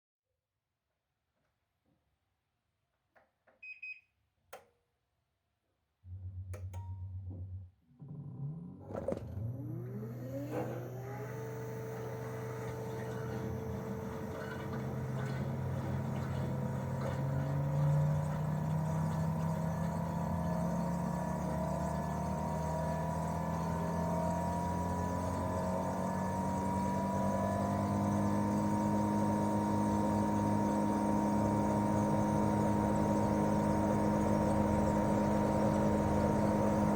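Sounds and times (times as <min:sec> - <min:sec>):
compressor hum and whine: 0:09.7 - 0:36.9.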